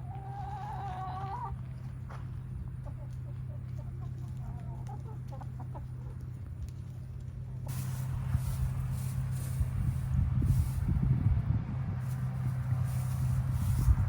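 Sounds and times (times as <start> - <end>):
chicken clucking: 0.0 - 6.8
steady low hum: 5.2 - 14.0.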